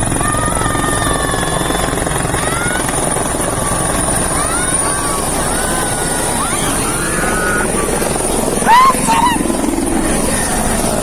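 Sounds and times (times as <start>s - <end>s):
helicopter rotor beating: 0.0s - 11.0s
faint high-pitched gliding calls: 3.7s - 11.0s.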